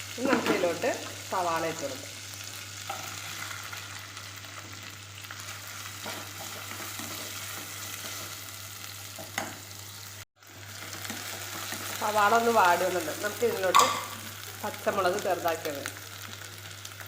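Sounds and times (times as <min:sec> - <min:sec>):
onions sizzling in hot oil: 0:00.0 - 0:17.0
spoon stirring and scraping pan: 0:02.8 - 0:04.8, 0:05.4 - 0:09.8, 0:10.7 - 0:12.0.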